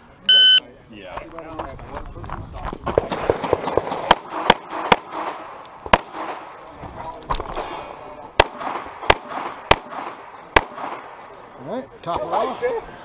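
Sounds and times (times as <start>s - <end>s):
pistol shots with echo: 3.0s - 6.6s, 8.3s - 11.4s.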